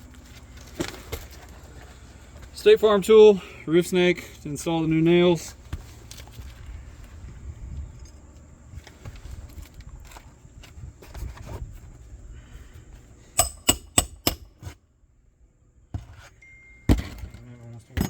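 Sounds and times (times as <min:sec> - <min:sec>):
sharp hammer blows: 0:13.4 - 0:14.5.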